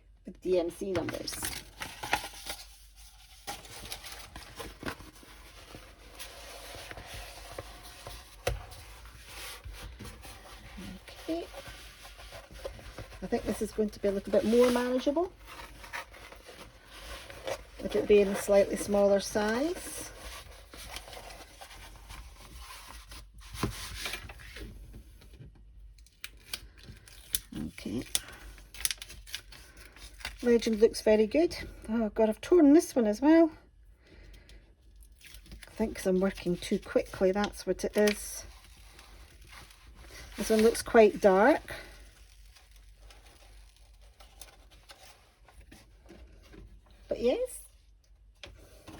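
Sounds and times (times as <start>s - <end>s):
canvas rustling and scraping: 8.9s - 20.2s.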